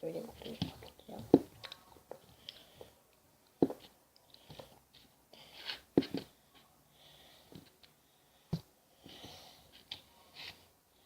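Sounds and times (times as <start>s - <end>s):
breathing: 2.2s - 3.0s, 6.9s - 9.8s.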